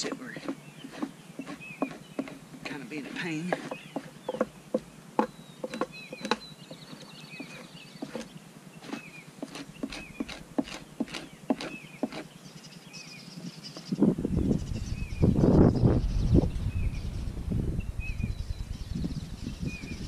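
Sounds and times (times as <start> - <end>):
knife scraping hide: 0.0 - 12.3
bird chirping: 0.0 - 20.0.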